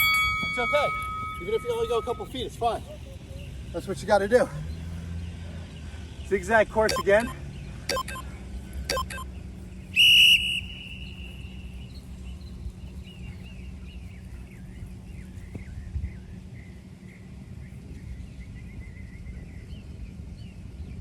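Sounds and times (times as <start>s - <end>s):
outdoor background noise: 0.0s - 21.0s
loud high timer beep: 6.9s - 8.3s, 8.9s - 9.3s
faint high chirps: 6.9s - 9.4s.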